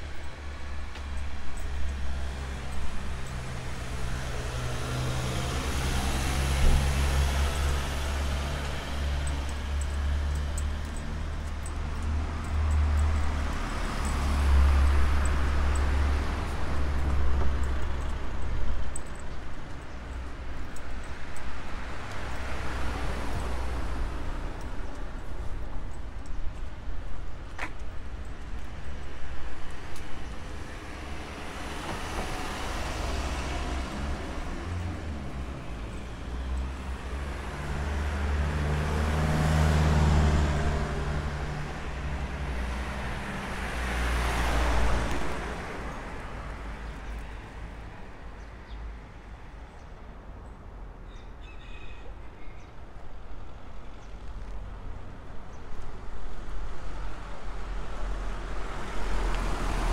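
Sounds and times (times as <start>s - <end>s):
vehicle engine hum passing: 30.4s - 47.8s.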